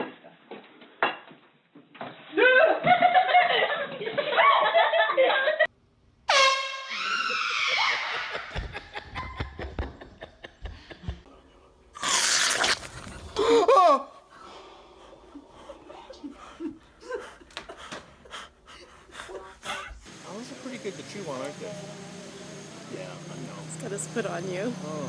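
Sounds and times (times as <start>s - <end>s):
people laughing: 2.4s - 5.7s, 7.2s - 11.3s, 15.4s - 19.6s.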